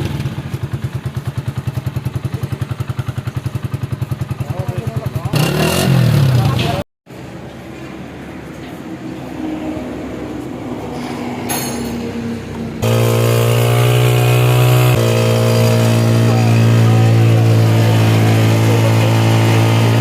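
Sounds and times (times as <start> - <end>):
motorcycle engine idling: 0.0 - 6.8, 12.8 - 20.0.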